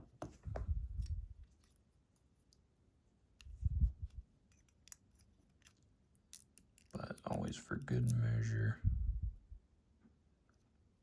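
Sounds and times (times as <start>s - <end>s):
small metallic clicks of lock parts: 4.5s - 8.2s.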